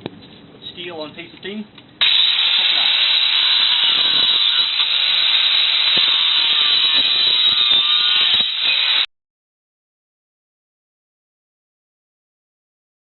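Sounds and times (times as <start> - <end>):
angle grinder cutting steel: 2.0 - 9.1.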